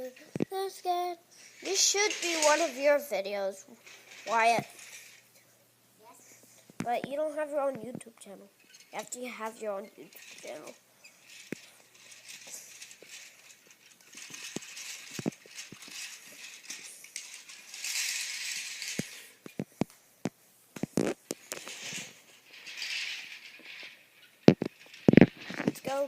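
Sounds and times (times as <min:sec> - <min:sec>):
toy train clicks and rattles: 0:00.0 - 0:05.3, 0:08.7 - 0:20.0, 0:20.8 - 0:26.0
hissy rustling: 0:00.0 - 0:05.4.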